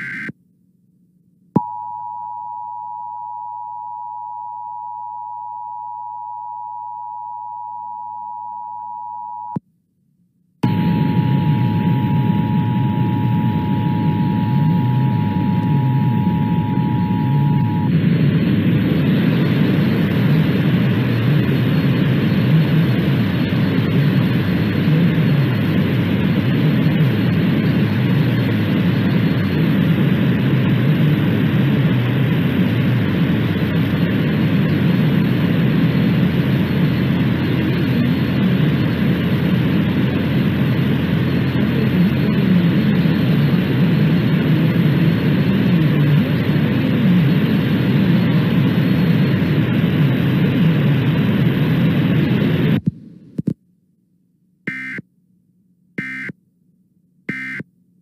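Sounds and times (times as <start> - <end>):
two-tone alert signal: 0.0 - 0.3, 54.7 - 55.0, 56.0 - 56.3, 57.3 - 57.6
broadcast static hiss and rumble: 0.0 - 1.6, 10.6 - 53.6.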